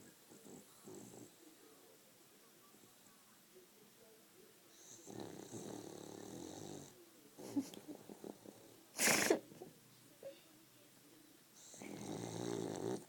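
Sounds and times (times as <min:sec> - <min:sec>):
dog snoring with whistle: 0:04.8 - 0:06.9, 0:09.0 - 0:09.4, 0:11.6 - 0:13.0
short loud snort burst: 0:09.0 - 0:09.4.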